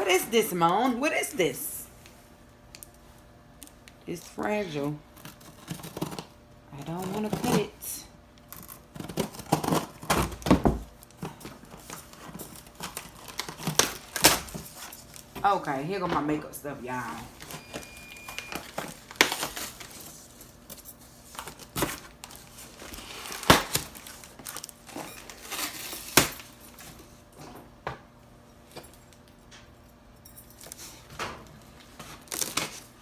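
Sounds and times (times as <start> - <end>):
packaging rustling: 8.6 - 15.5, 17.2 - 26.8, 30.7 - 33.0.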